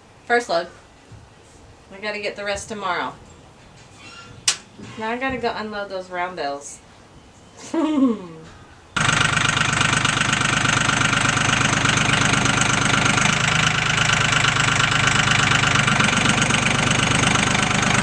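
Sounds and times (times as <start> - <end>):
engine with rapid knocking: 9.0 - 18.0.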